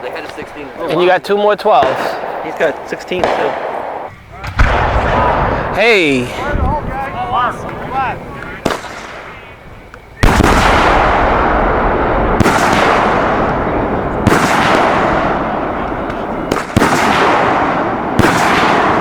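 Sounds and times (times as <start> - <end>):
firework shells bursting with booms: 1.8 - 5.9, 8.6 - 9.4, 10.2 - 19.0.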